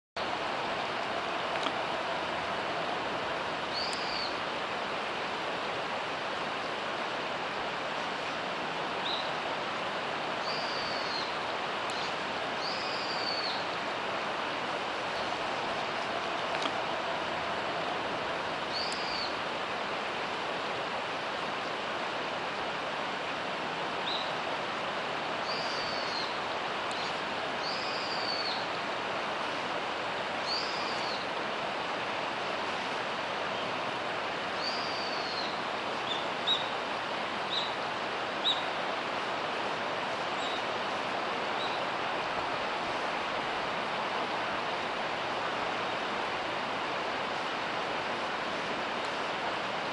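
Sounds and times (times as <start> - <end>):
mountain stream rushing: 0.2 - 49.9
small bird calling: 3.7 - 4.4, 10.4 - 13.7, 18.7 - 19.4, 25.4 - 28.7, 30.4 - 31.3, 34.6 - 36.7.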